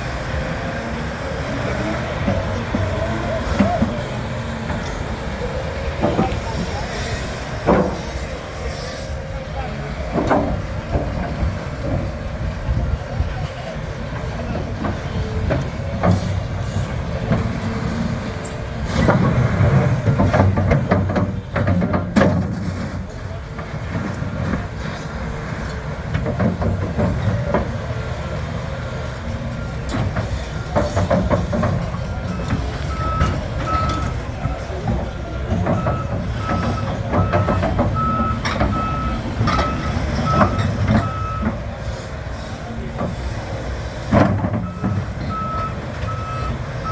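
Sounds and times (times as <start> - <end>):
excavator diesel rumble: 0.0 - 46.9
metallic clanks and knocks: 10.1 - 12.2, 14.2 - 25.0, 29.9 - 41.6
excavator travel alarm beeping: 27.1 - 41.8, 44.6 - 46.9.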